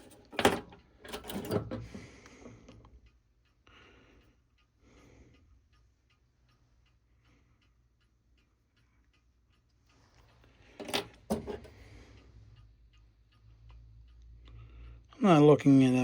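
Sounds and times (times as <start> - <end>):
metal clock parts clacking: 0.0 - 2.1, 10.6 - 11.9
clock ticking faintly: 1.8 - 16.0.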